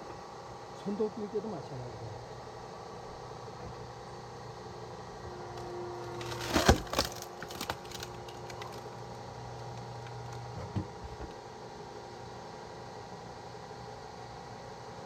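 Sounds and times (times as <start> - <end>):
log splitter humming: 2.2 - 11.5
wood cracking and splintering: 6.1 - 10.5.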